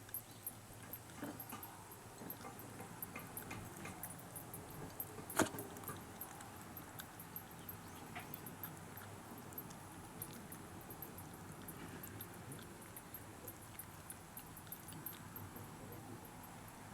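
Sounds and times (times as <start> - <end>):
light jingling: 0.0 - 16.9.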